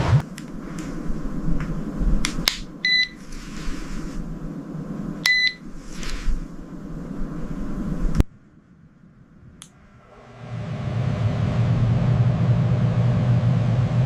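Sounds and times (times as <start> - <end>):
short electronic beeps: 2.8 - 3.2, 5.3 - 5.6.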